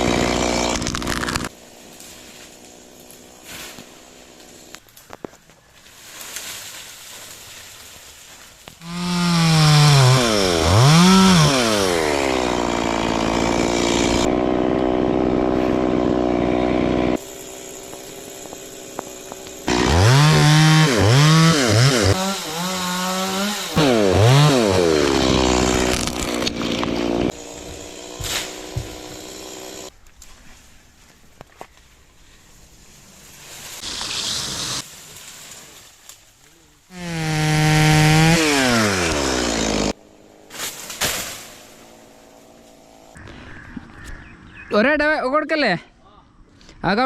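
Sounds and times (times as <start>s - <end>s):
chainsaw revving: 0.0s - 4.8s, 8.8s - 29.9s, 33.8s - 34.8s, 36.9s - 43.2s.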